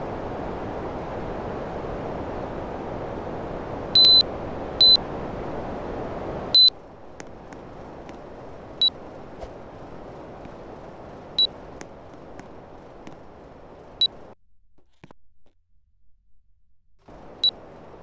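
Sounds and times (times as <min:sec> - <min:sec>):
air conditioner beeps: 0:04.0 - 0:05.0, 0:06.5 - 0:06.8, 0:08.8 - 0:09.0.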